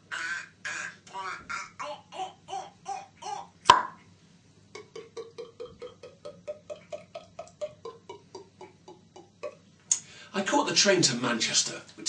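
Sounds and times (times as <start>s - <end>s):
squeaky vocal pulses: 0.0s - 3.7s, 4.8s - 9.7s
vocal cork pop: 3.6s - 4.0s, 4.8s - 10.0s
vocal glugging: 4.7s - 10.0s
man imitating bottle sounds: 4.8s - 10.0s.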